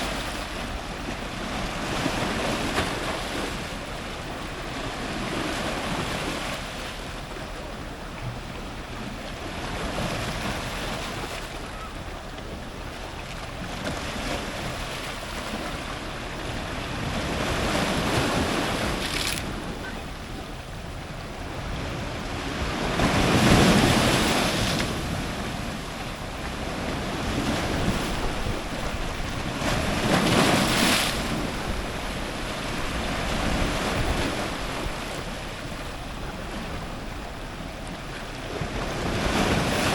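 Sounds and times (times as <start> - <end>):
ocean surf breaking on rocks: 0.0 - 39.9.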